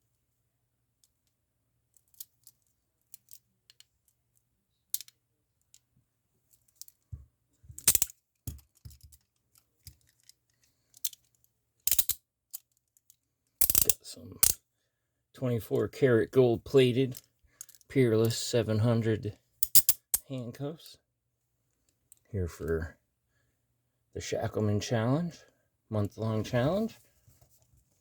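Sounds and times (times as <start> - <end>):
handcuffs clicking and clinking: 7.8 - 11.3, 11.9 - 14.6, 19.6 - 20.2.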